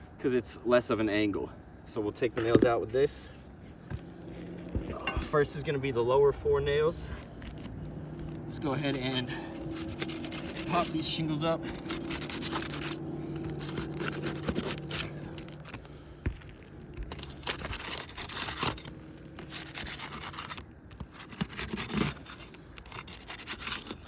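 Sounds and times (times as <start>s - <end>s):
low steady hum: 0.0s - 24.0s
flat bar scraping shingles: 4.3s - 24.0s
shingles tearing crackles: 7.2s - 24.0s.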